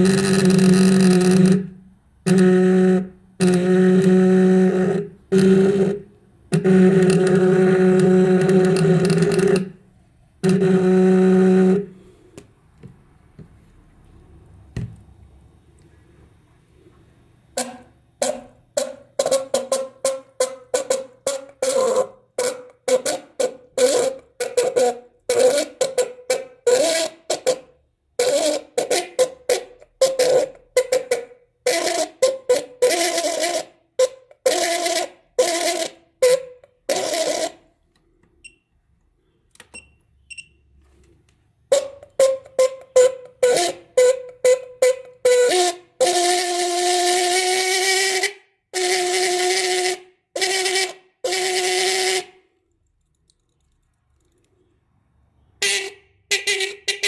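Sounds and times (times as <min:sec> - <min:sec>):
car horn honking: 0:00.0 - 0:09.8, 0:10.4 - 0:12.1, 0:55.6 - 0:57.0.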